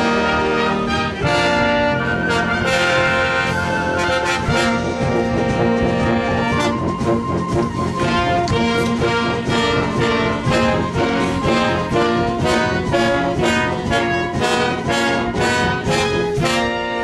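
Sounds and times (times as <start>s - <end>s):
church band and orchestra playing hymn: 0.0s - 17.0s.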